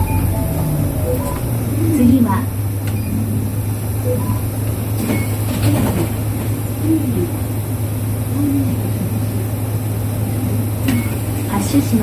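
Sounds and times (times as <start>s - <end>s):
bus diesel engine idling: 0.0s - 12.0s.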